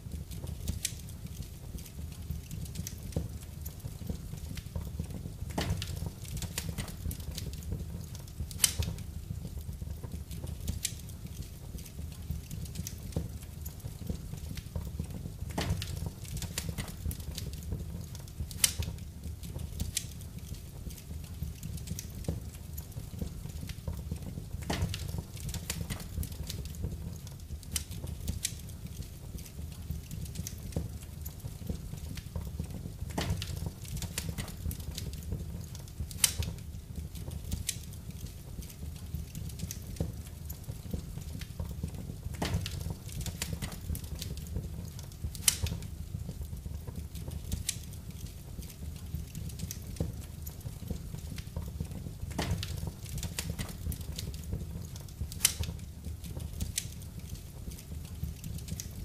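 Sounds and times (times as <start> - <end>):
fire crackling and popping: 0.0 - 59.0
flames rumbling: 0.0 - 59.0.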